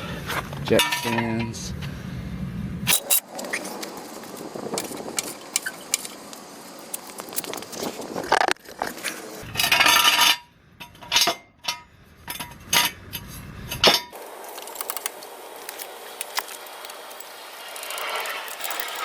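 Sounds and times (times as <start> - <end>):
metallic clanks and clinks: 0.8 - 1.5, 2.9 - 3.3, 4.7 - 6.2, 9.4 - 14.2, 14.8 - 19.0
steel parts scraping: 2.9 - 3.8, 4.4 - 19.0.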